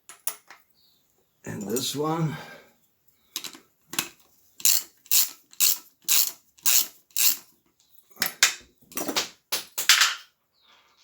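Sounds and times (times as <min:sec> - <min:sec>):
ratchet wrench clicking: 0:03.4 - 0:07.5.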